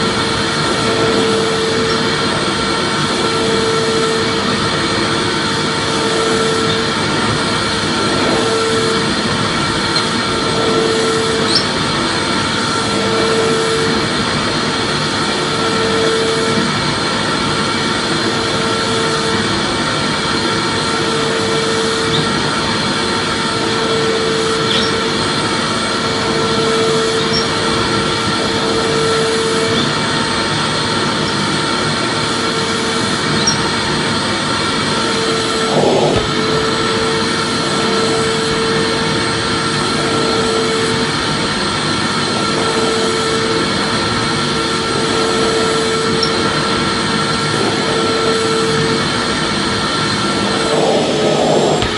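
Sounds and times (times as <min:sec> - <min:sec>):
vacuum cleaner running: 0:00.0 - 0:51.9.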